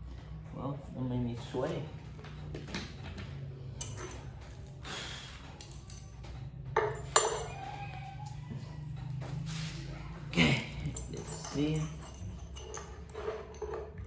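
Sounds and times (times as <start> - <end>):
small metal parts clinking: 3.7 - 4.8, 5.4 - 7.8, 10.7 - 14.0.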